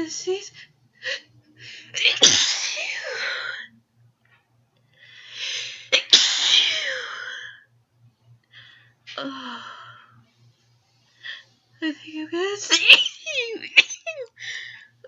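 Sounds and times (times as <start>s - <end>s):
person sneezing: 2.0s - 3.6s, 6.0s - 7.3s.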